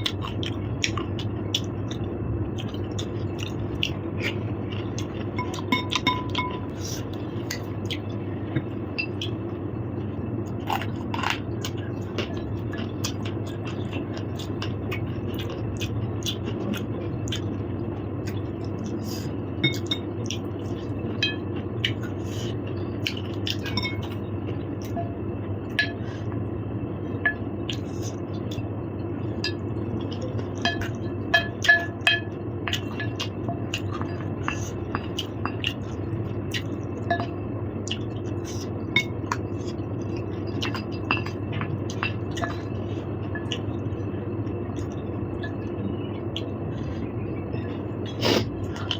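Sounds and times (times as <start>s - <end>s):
steady low hum: 0.0s - 48.9s
cutlery clinking against dishes: 5.4s - 6.7s.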